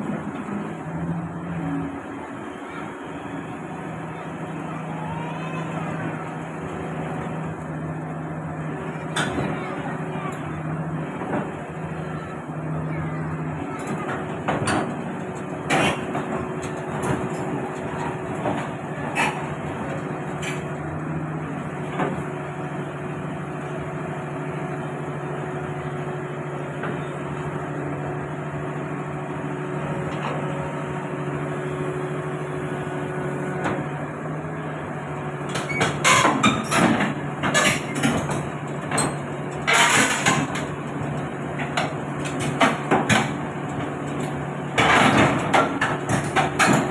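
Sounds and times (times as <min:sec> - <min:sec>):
diesel machinery running: 0:00.0 - 0:46.9
metal clanking and banging: 0:35.5 - 0:40.8.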